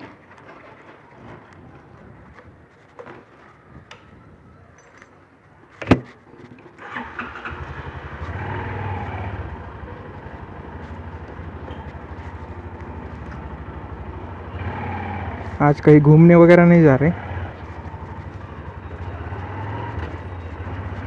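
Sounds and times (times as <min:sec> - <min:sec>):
motorcycle engine starting and idling: 0:06.7 - 0:21.0.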